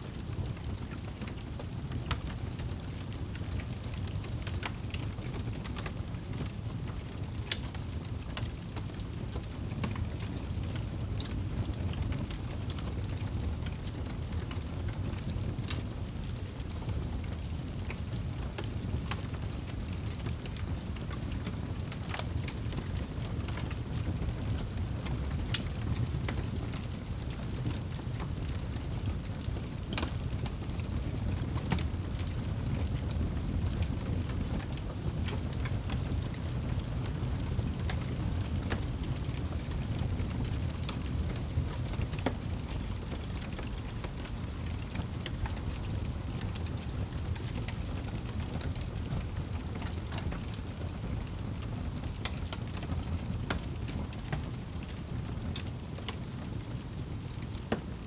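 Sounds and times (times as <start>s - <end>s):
fire rumbling: 0.1s - 58.0s
logs crackling and popping: 0.1s - 58.0s.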